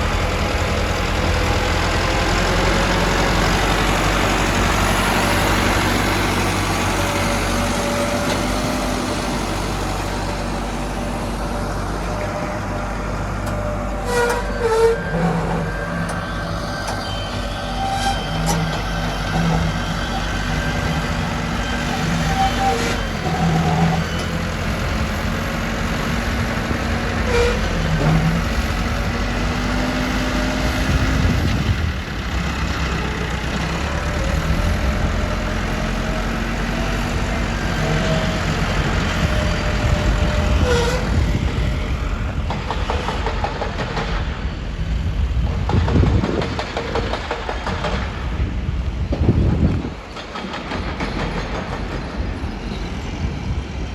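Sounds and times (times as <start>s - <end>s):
heavy diesel machinery engine: 0.0s - 53.9s.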